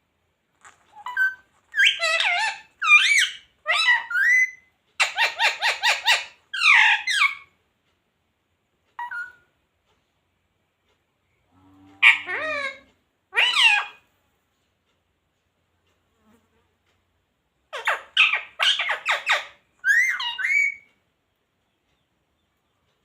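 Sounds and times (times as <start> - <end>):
parrot calling: 0.6 - 7.5, 9.0 - 9.5, 12.0 - 14.1, 17.7 - 20.9.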